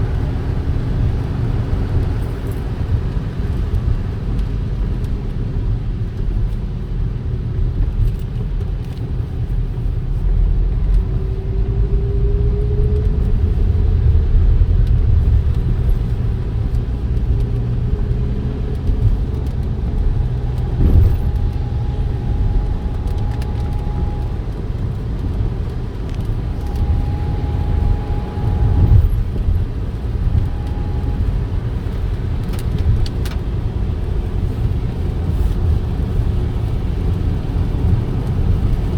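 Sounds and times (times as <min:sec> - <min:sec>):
car rumbling on the move: 0:00.0 - 0:38.9
high whine: 0:19.8 - 0:24.7, 0:26.3 - 0:31.7.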